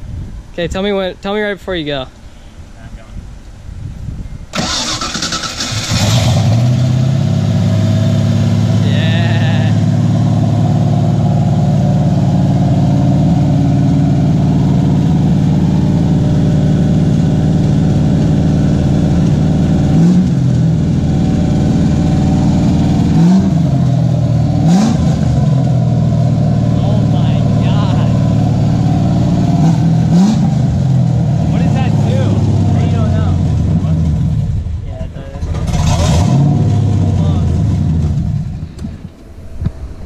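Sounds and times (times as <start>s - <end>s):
engine cranking on starter: 4.5s - 6.7s, 35.3s - 36.9s
car engine idling: 4.5s - 40.0s
engine revving: 4.6s - 40.0s.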